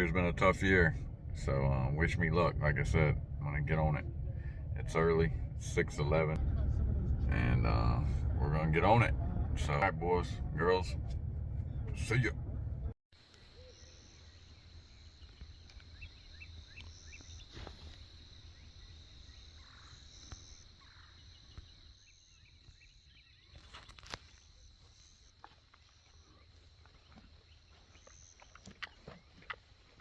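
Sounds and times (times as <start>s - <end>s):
low rumble: 0.0s - 13.0s.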